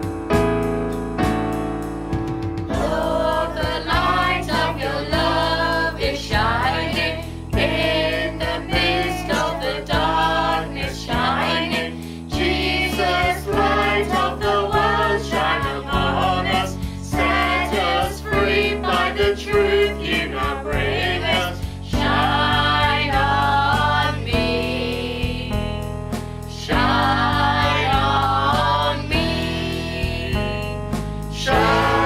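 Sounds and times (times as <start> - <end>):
instrumental backing: 0.0 - 24.0, 29.6 - 32.0
voices singing: 2.8 - 24.3, 26.7 - 30.2, 31.3 - 32.0.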